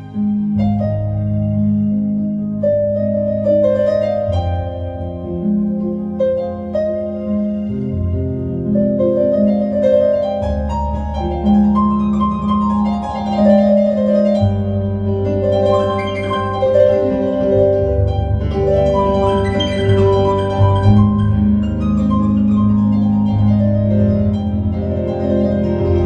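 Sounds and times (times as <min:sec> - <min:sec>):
piano improvisation: 0:00.0 - 0:26.0.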